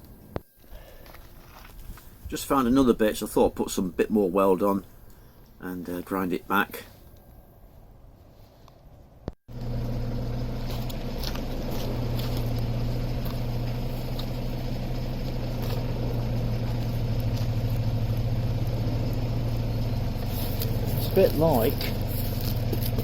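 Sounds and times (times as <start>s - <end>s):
engine humming steadily: 9.5s - 23.0s.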